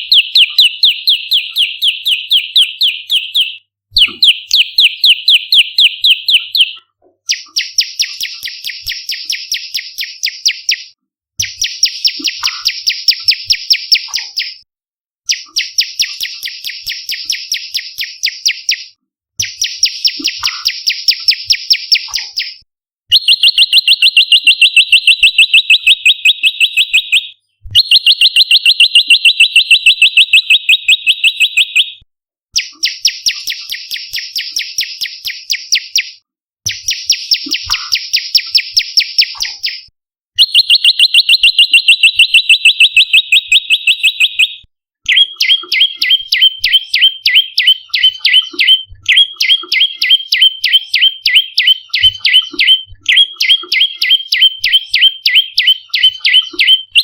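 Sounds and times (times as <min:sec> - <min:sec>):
bird chirping rapidly: 0:00.0 - 0:14.6, 0:15.3 - 0:32.0, 0:32.6 - 0:57.0.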